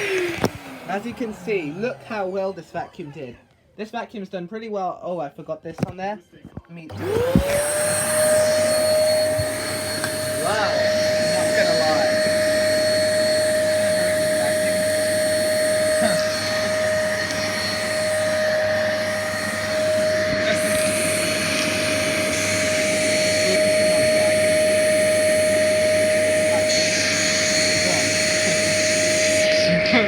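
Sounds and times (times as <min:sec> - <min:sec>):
vacuum cleaner running: 0:00.0 - 0:02.8, 0:06.9 - 0:30.0.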